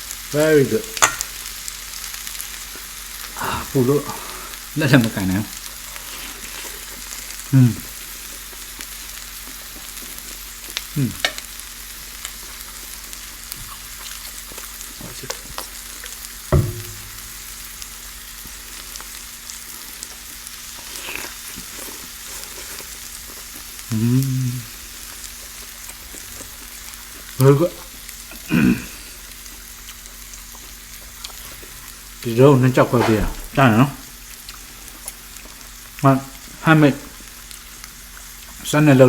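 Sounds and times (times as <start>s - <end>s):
steady hiss: 0.0s - 21.6s, 27.0s - 39.0s
chewing and mouth noises: 12.2s - 16.2s, 20.0s - 32.0s, 34.4s - 38.6s.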